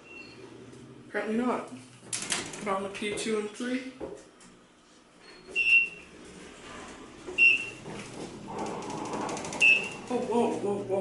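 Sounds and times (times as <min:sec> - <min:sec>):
elevator short high beeps: 0:05.2 - 0:06.0, 0:07.4 - 0:07.8, 0:09.6 - 0:10.0.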